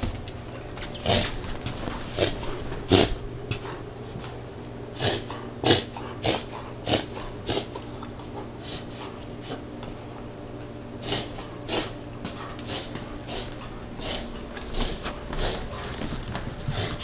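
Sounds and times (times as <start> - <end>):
puppy breathing harshly: 11.0 - 17.0.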